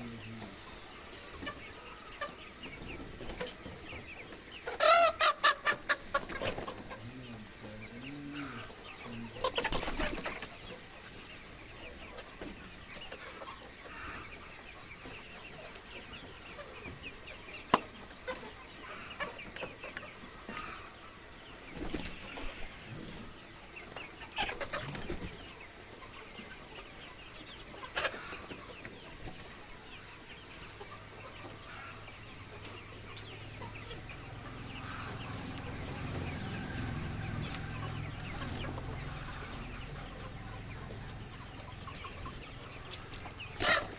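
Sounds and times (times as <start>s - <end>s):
chickens clucking: 0.0s - 43.9s.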